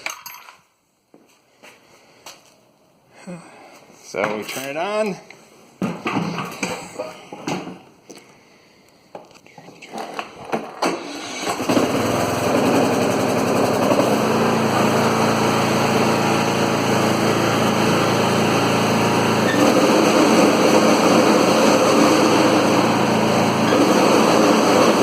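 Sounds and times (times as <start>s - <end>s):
lawn mower engine running: 10.8s - 25.0s.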